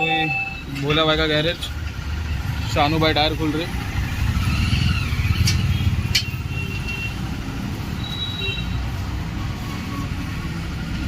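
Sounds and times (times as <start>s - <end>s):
road traffic rumble: 0.0s - 11.0s.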